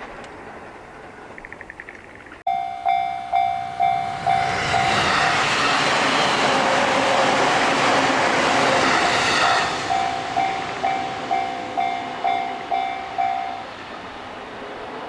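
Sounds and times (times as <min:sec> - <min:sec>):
level crossing bell ringing: 0:02.5 - 0:04.9, 0:09.9 - 0:13.7
train rushing past: 0:02.8 - 0:15.0.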